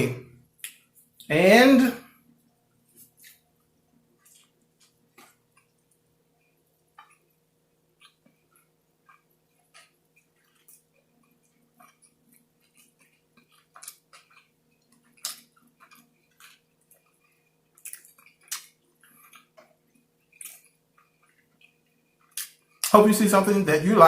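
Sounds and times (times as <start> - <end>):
person chewing: 0.5 - 1.3, 2.2 - 23.0.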